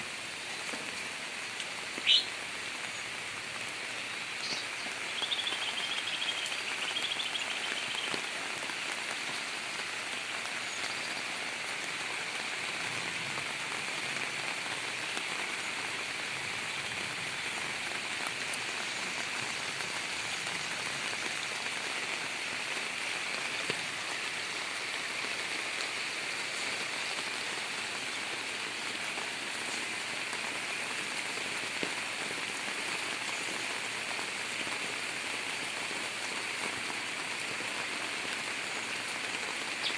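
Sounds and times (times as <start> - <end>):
heavy rain: 0.0 - 39.9
bird singing: 2.0 - 2.3, 4.4 - 8.2.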